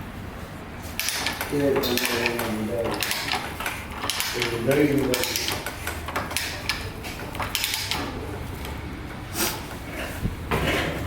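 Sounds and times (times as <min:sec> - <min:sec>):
hand tools clicking and knocking: 0:01.0 - 0:08.8.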